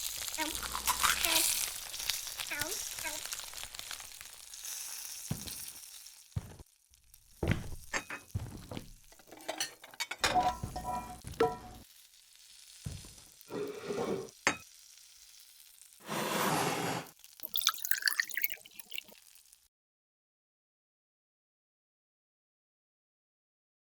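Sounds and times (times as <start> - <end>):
food sizzling and crackling: 0.0 - 19.7
crockery knocks and clinks: 7.5 - 11.8.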